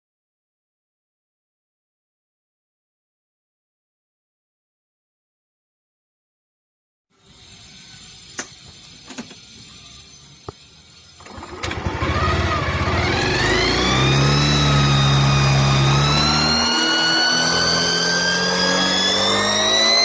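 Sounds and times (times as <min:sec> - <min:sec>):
scooter engine starting and whining: 0:07.2 - 0:20.0.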